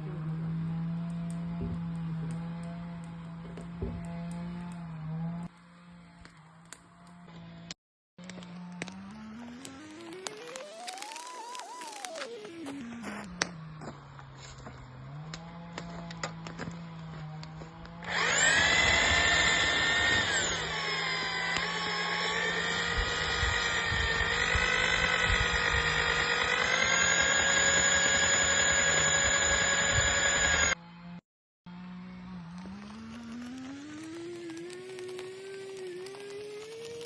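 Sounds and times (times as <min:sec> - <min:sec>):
electric drill whining under load: 0:18.0 - 0:30.8.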